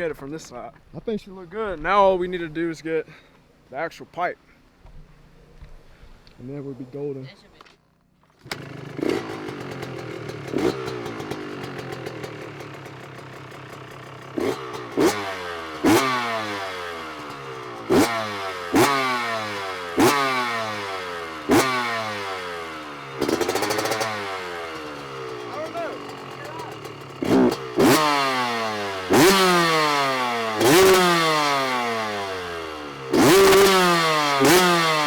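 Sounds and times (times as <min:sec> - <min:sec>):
two-stroke engine revving: 0:08.4 - 0:35.0.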